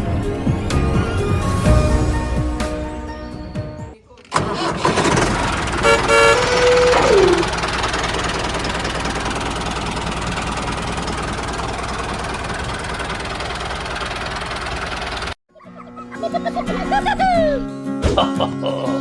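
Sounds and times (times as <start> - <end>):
tractor engine running: 4.2 - 15.4
tone sliding down in pitch: 6.3 - 7.5.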